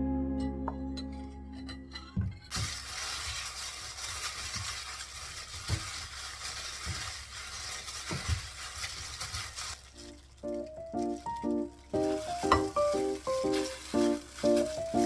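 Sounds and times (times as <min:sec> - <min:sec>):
food sizzling in a frying pan: 0:02.5 - 0:10.4, 0:11.2 - 0:15.0.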